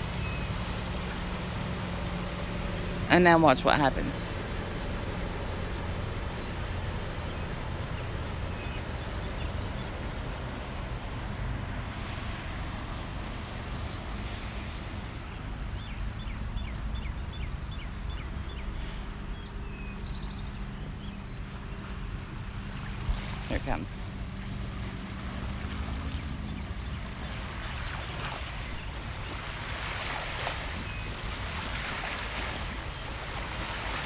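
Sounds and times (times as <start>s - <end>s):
bird chirping: 0.0s - 2.1s
motorboat engine running: 0.0s - 34.0s.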